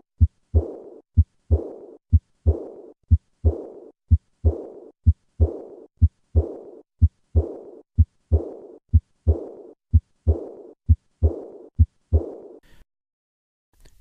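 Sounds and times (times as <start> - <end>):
heartbeat sounds: 0.0 - 12.6
high-pitched heart murmur: 0.0 - 12.6.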